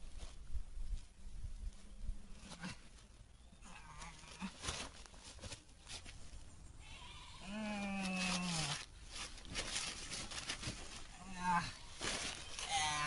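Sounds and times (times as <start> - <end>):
farm animal calling: 6.8 - 7.9.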